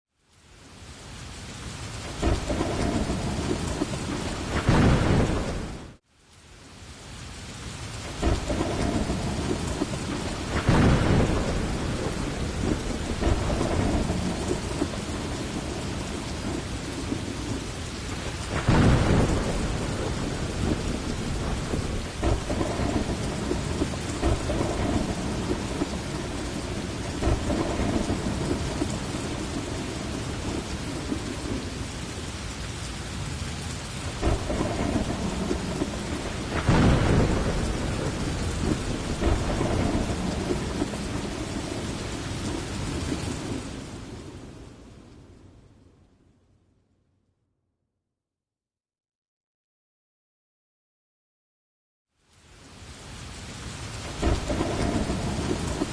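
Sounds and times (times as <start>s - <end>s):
heavy rain falling: 0.2s - 45.7s, 52.2s - 55.9s
thunder rumbling: 2.0s - 6.0s, 8.0s - 45.4s, 53.6s - 55.9s.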